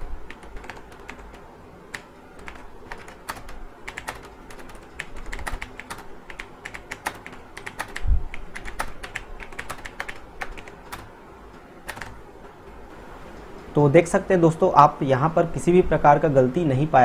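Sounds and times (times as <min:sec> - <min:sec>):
keyboard typing clicks: 0:00.3 - 0:12.2.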